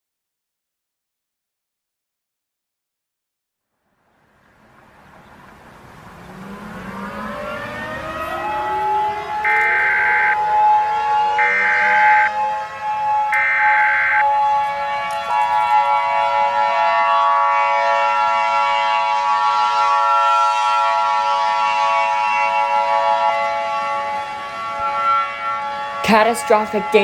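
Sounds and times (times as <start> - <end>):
siren chord: 5.9 - 27.0.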